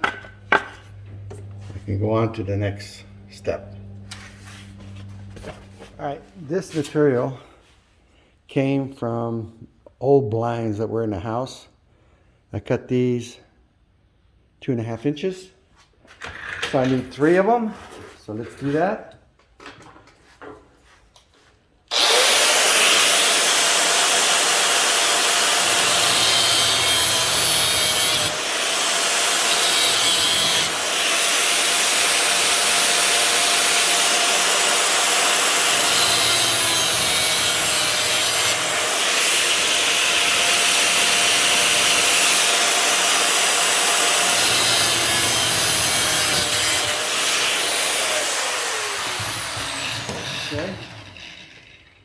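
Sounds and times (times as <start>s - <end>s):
power saw cutting: 0.0s - 7.3s, 21.9s - 52.0s.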